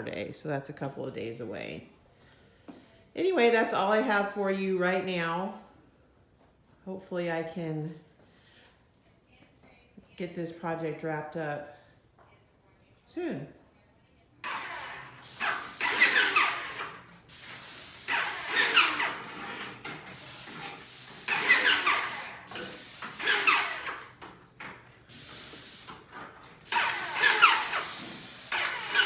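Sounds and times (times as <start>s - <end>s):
paint spray gun hissing: 14.4s - 24.2s, 25.0s - 29.0s.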